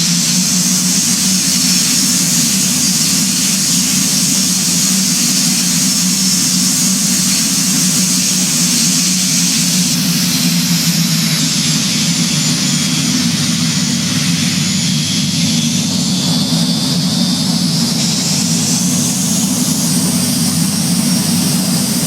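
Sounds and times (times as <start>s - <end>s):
high hiss: 0.0s - 15.4s
aircraft engines droning: 0.0s - 22.0s.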